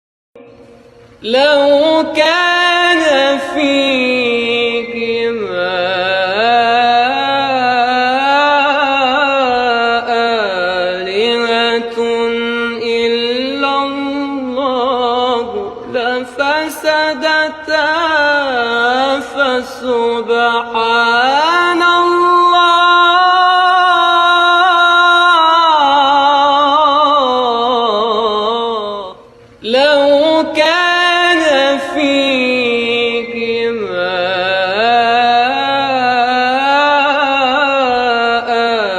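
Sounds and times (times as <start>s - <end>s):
man reciting melodically: 0.4s - 38.9s.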